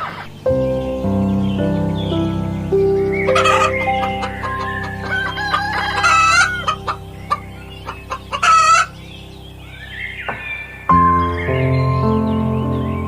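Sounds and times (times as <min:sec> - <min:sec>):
chickens calling and clucking: 0:00.0 - 0:00.4, 0:03.1 - 0:10.6
quiet background music: 0:00.0 - 0:13.0.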